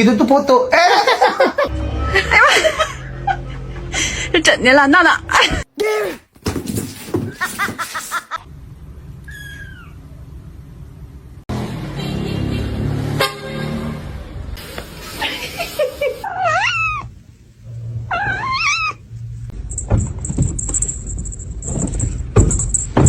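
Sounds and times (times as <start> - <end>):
cat meowing: 9.2 - 10.0, 16.3 - 17.1, 18.1 - 19.0.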